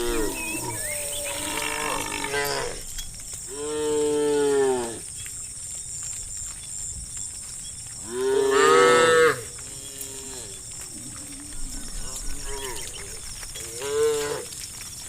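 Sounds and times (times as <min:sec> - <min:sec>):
cows mooing: 0:00.0 - 0:02.9, 0:08.1 - 0:14.6.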